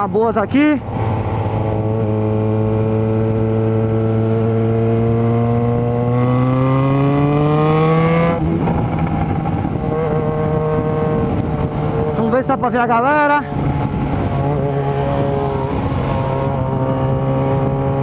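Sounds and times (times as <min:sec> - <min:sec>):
motorcycle engine revving: 0:00.8 - 0:18.0.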